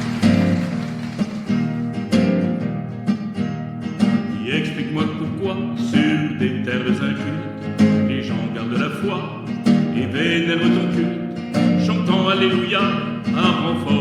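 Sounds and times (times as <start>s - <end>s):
acoustic guitar: 0.0s - 14.0s
person singing: 4.4s - 14.0s.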